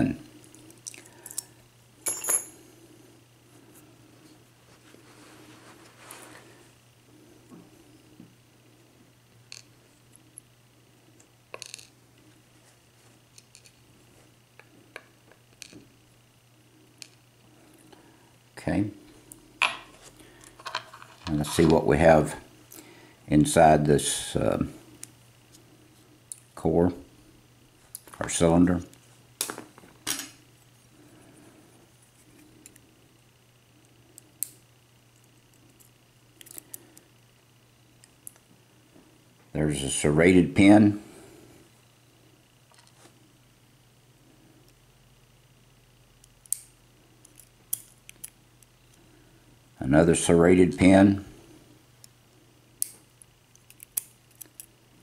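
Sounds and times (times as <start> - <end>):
faint steady hum: 0.0 - 55.0
small metal parts clicking: 35.7 - 36.8, 46.4 - 49.0, 52.8 - 54.7.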